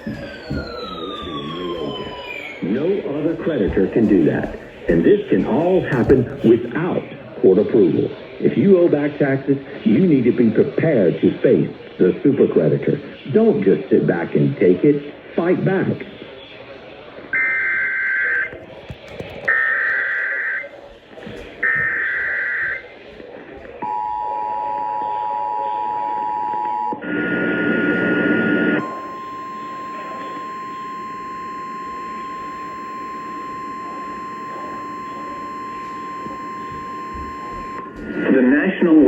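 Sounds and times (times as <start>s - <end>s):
two-tone attention signal: 28.8s - 38.5s.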